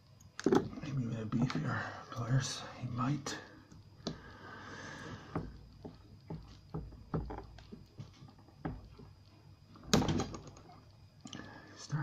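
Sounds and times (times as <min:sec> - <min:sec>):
small clicks and knocks: 0:00.2 - 0:01.6, 0:05.3 - 0:11.4.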